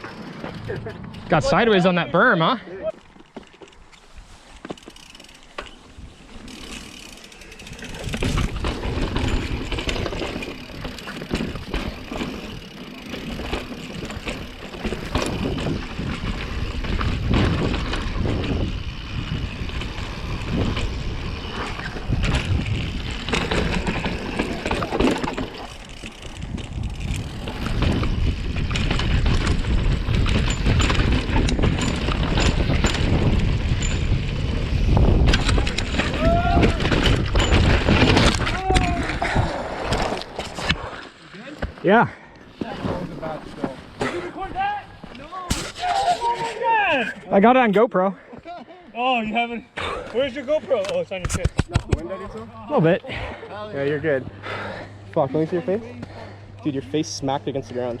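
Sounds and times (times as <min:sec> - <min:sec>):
bike rattling on rough ground: 0:00.0 - 0:58.0
wind rushing over microphone: 0:15.2 - 0:24.0, 0:26.3 - 0:39.8.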